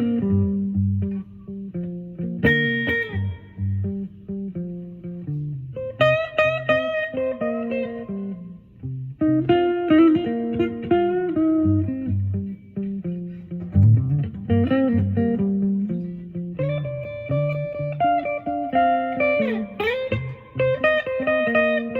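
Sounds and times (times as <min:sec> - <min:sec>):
electric guitar playing blues lead: 0:00.0 - 0:21.9.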